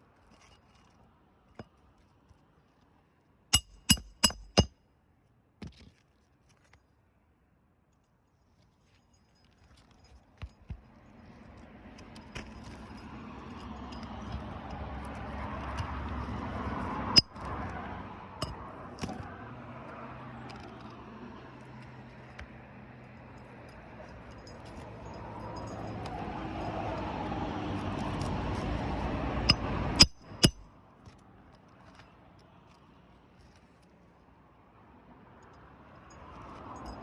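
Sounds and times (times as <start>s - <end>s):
sharp metallic clinks: 3.6s - 4.7s, 29.5s - 30.6s.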